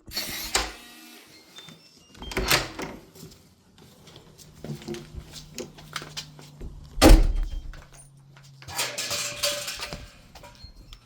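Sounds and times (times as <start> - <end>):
door clicks and knocks: 7.0 - 7.8
heavy door thud: 7.0 - 7.9.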